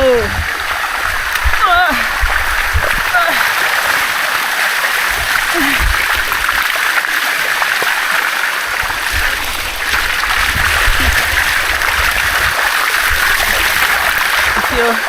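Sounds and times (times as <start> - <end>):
low rumbles: 0.0 - 4.2, 8.8 - 14.8
waterfall rushing over rock: 0.0 - 15.0.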